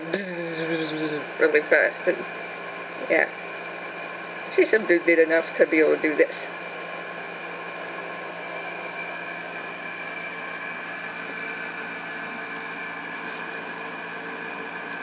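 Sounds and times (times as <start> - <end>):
appliance mechanical hum: 0.0 - 15.0.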